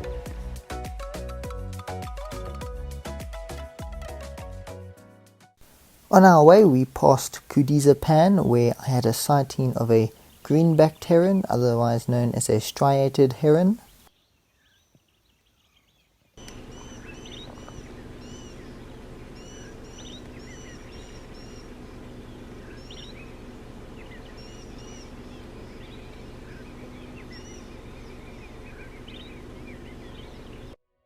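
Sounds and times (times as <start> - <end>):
wild birds chirping: 5.6 - 30.8
steady low hum: 16.4 - 30.8.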